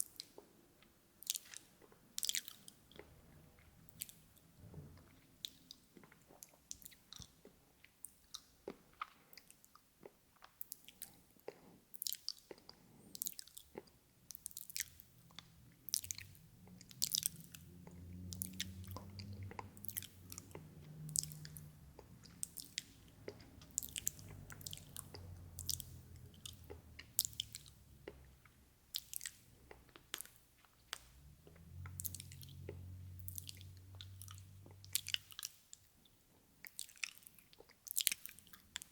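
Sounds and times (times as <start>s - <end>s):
wet mouth clicks and smacks: 1.2s - 35.9s, 36.6s - 38.9s
low rumble: 15.4s - 28.2s.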